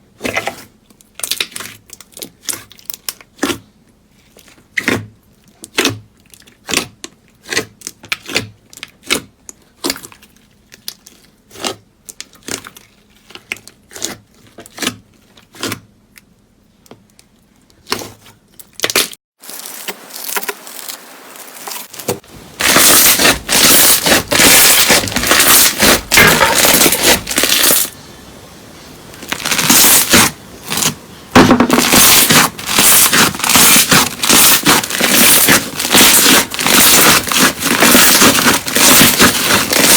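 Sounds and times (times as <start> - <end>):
slime crunching and crackling: 0.3 - 28.0, 29.0 - 39.9.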